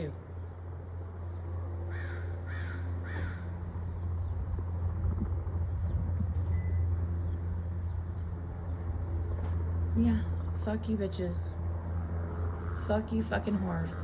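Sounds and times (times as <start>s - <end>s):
helicopter drone: 0.0s - 14.0s
crow cawing: 1.9s - 3.6s.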